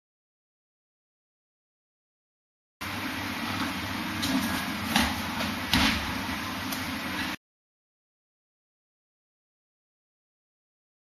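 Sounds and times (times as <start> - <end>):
thumps of feet on floor: 4.2 - 6.2.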